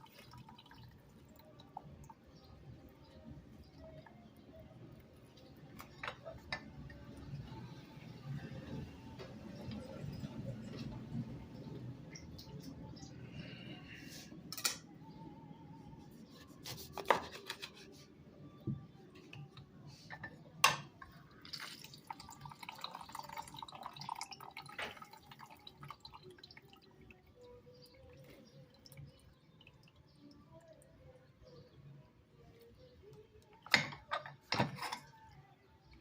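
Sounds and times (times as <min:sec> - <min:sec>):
water dripping: 0:00.0 - 0:06.5, 0:21.3 - 0:31.0
kitchenware clinking: 0:14.5 - 0:14.9, 0:20.1 - 0:21.6, 0:33.6 - 0:35.3.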